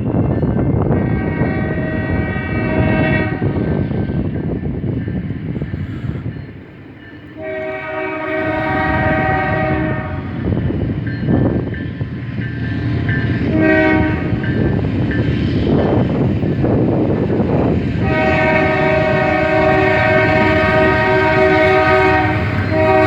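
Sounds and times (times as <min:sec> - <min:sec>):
rumble of passing train: 0:00.0 - 0:23.0
locomotive air horn: 0:01.0 - 0:03.8, 0:07.4 - 0:10.5, 0:13.5 - 0:14.4, 0:18.0 - 0:23.0.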